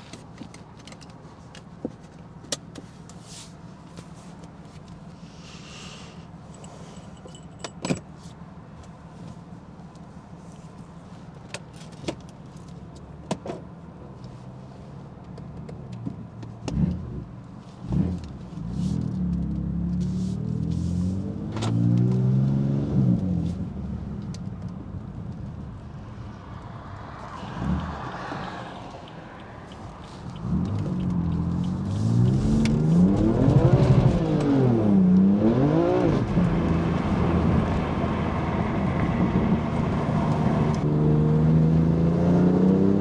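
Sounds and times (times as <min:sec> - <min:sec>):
car engine revving: 0:25.7 - 0:43.0.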